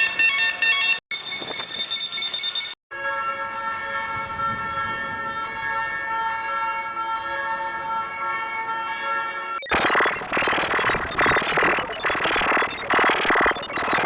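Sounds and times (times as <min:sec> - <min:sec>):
ambulance siren steady tone: 0:03.4 - 0:14.0.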